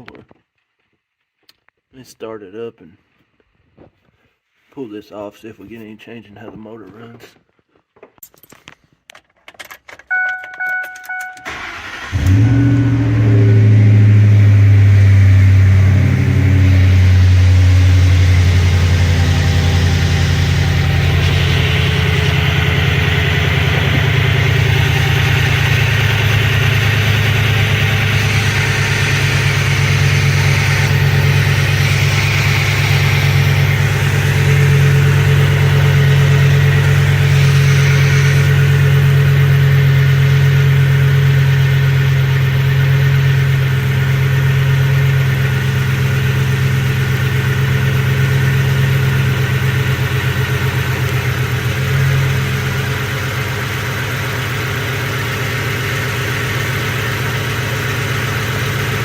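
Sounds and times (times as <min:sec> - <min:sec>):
truck engine idling: 0:11.4 - 0:59.0.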